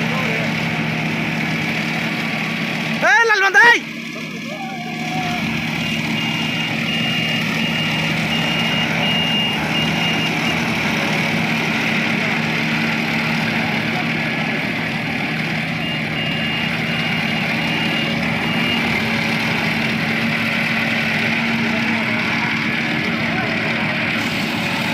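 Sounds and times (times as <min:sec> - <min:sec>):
diesel engine running: 0:00.0 - 0:24.9
high warning beeper: 0:05.7 - 0:10.7, 0:15.8 - 0:19.0.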